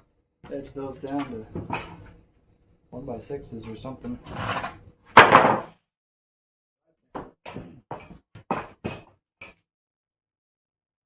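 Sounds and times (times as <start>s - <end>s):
wooden boards knocking: 5.2s - 5.7s.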